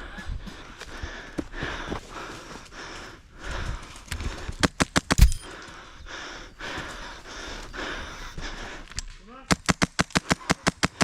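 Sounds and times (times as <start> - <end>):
heavy breathing: 0.0 - 9.0
airsoft gun shots: 4.8 - 5.5.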